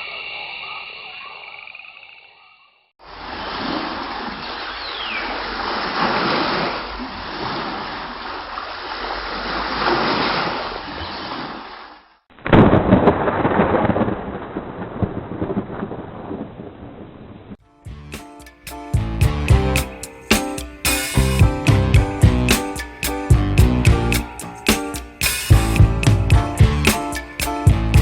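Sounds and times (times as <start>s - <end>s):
rain: 3.0s - 17.6s
loud crackling noise: 12.3s - 17.6s
rolling thunder: 12.4s - 17.6s.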